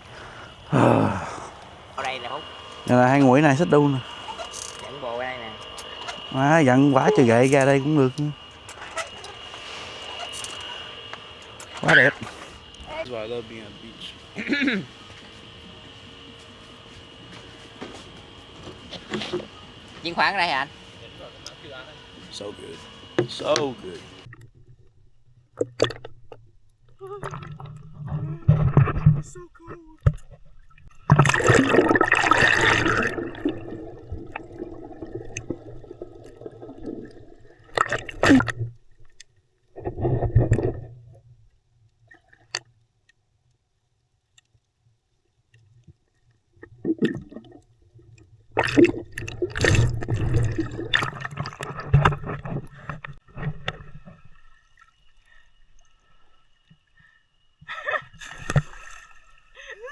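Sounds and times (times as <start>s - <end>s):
seawater sloshing and gurgling: 24.2s - 41.3s, 46.6s - 56.2s.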